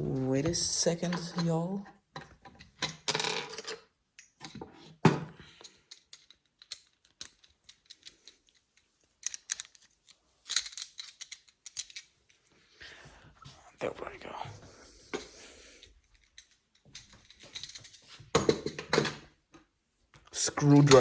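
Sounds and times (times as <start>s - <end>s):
small metal clicks and clinks: 5.5s - 12.4s
metal clatter with ring: 16.2s - 19.2s.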